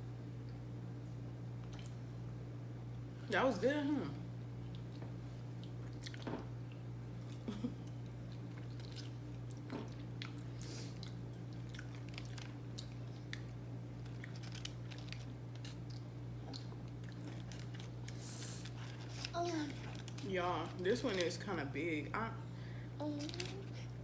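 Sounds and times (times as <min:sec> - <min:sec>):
steady low hum: 0:00.0 - 0:24.0
mouth clicks and crunches: 0:07.3 - 0:18.2
person chewing and biting: 0:08.3 - 0:20.2.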